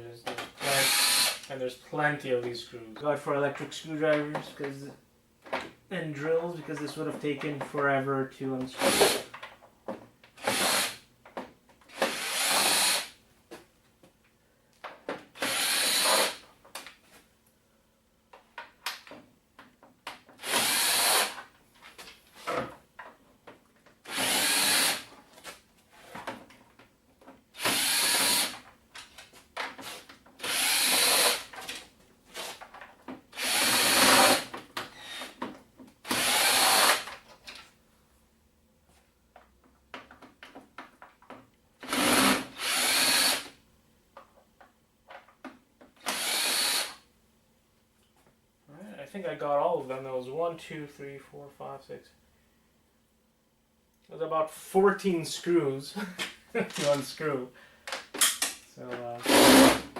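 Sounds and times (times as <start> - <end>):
electric screwdriver spinning: 0.8 - 1.4, 11.9 - 13.1, 15.4 - 16.4, 20.4 - 21.4, 24.1 - 25.0, 27.6 - 28.6, 29.8 - 31.5, 33.4 - 34.4, 36.1 - 37.0, 41.8 - 43.5, 46.0 - 47.0, 59.2 - 59.8.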